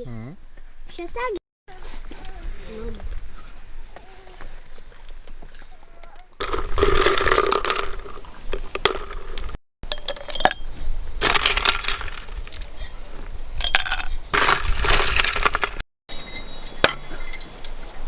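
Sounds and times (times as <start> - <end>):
cutlery and dishes clinking: 16.1 - 18.0.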